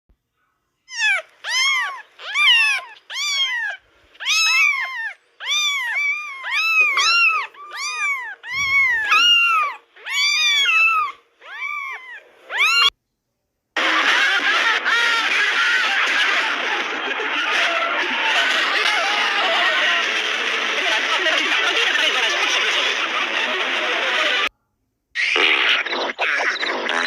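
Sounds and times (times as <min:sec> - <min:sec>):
cat meowing: 0:00.9 - 0:13.0
loud static hiss: 0:13.8 - 0:24.5.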